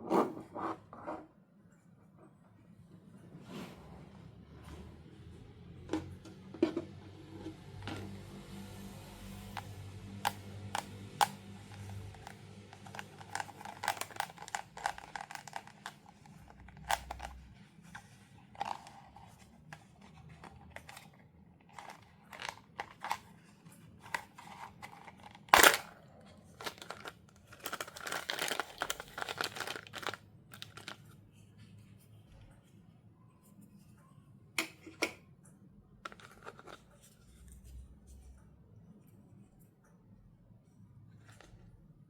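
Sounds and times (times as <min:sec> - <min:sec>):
packaging clicks and taps: 0:09.6 - 0:17.4, 0:18.6 - 0:23.2, 0:26.6 - 0:31.0, 0:36.1 - 0:36.8
plastic and cardboard crinkling: 0:10.2 - 0:31.3.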